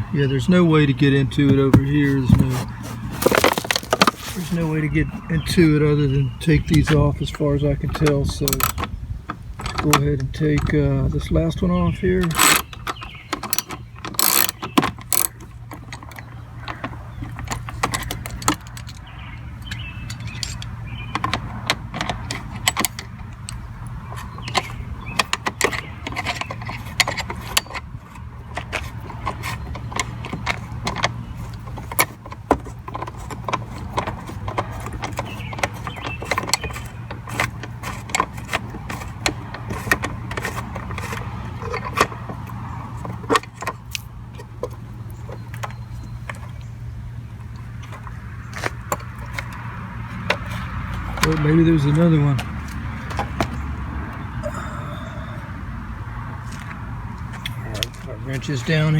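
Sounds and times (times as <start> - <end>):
socket wrench clicking: 8.4 - 8.9, 12.2 - 16.2.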